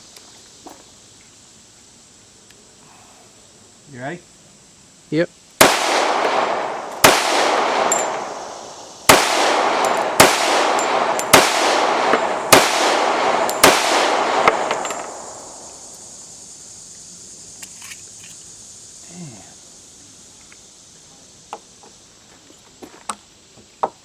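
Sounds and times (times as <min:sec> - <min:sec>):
pistol shots: 0:05.6 - 0:15.9
long gunshot echo: 0:05.6 - 0:16.2.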